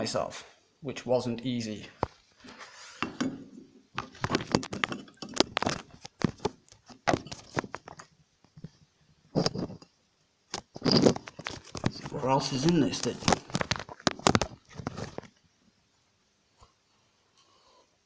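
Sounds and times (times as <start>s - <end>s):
plastic casing clicking and cracking: 13.0s - 15.3s.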